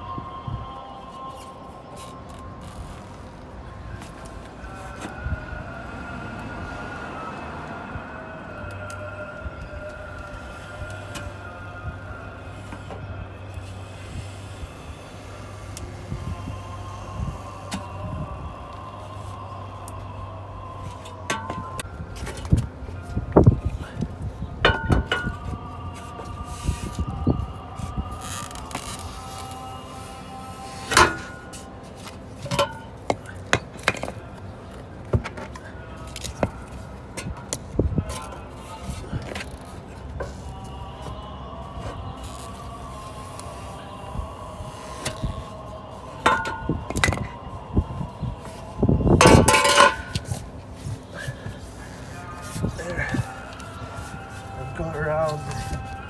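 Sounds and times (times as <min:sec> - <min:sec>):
low background hum: 0:00.0 - 0:56.0
tire lever clicks and knocks: 0:21.3 - 0:22.6, 0:24.7 - 0:25.5
tire levers knocking on rim: 0:21.3 - 0:22.6, 0:24.7 - 0:25.5, 0:46.2 - 0:47.3, 0:49.1 - 0:50.4.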